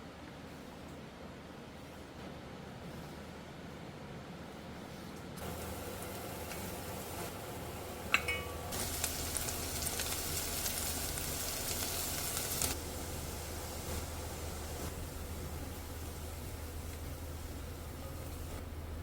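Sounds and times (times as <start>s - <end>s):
food sizzling in a hot pan: 5.4s - 18.5s.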